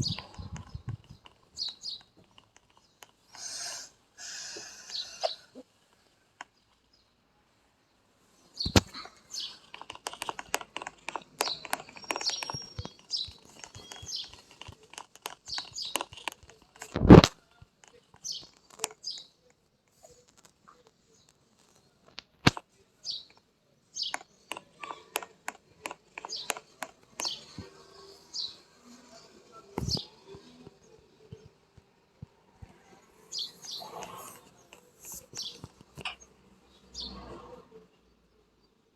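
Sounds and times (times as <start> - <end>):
bird chirping: 0.0 - 7.2, 8.3 - 22.0, 23.0 - 37.3
light clicks and taps: 0.1 - 3.3
sharp clicks and taps: 9.6 - 19.6, 22.1 - 22.6, 24.0 - 27.7.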